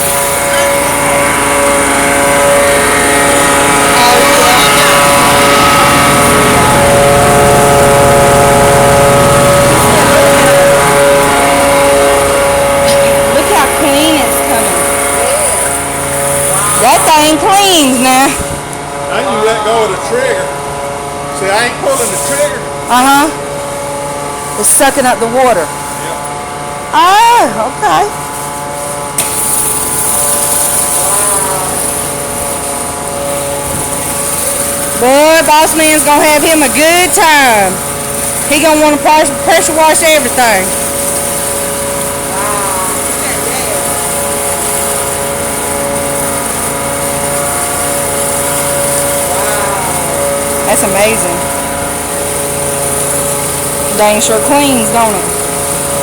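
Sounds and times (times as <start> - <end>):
high-pressure water spray hiss: 0.0 - 18.8, 21.8 - 56.0
pressure washer engine whine: 0.0 - 56.0.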